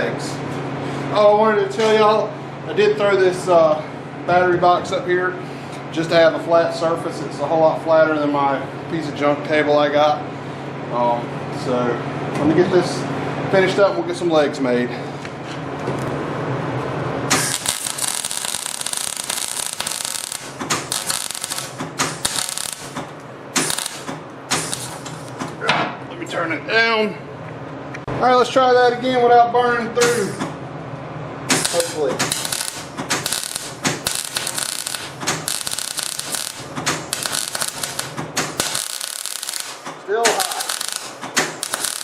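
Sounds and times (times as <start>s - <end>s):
welding arc crackling: 17.3s - 25.4s, 31.5s - 42.0s.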